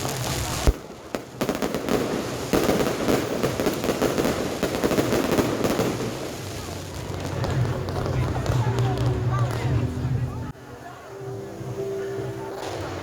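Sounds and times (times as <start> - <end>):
rapid firework pops: 0.0 - 9.6.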